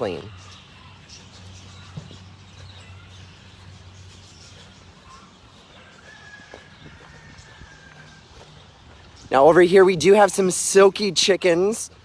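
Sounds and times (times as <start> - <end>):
faint chicken clucking: 1.8 - 8.6.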